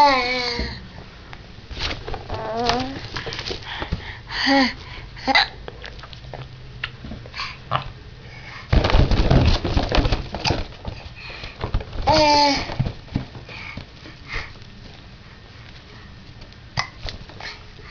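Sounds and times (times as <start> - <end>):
rubber balloons rustling: 1.6 - 6.0, 8.3 - 17.9
baby vocalization: 2.3 - 3.0.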